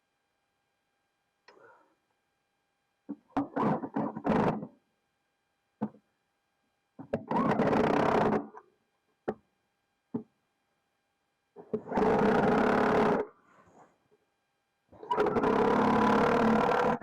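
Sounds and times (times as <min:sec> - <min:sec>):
impact wrench running: 0:11.9 - 0:13.2, 0:15.2 - 0:17.0.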